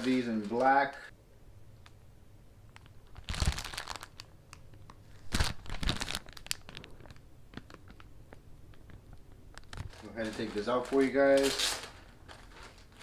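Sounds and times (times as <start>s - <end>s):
plastic packaging crinkling: 0.0s - 1.1s, 2.7s - 13.0s
small rustles and clicks: 2.7s - 13.0s.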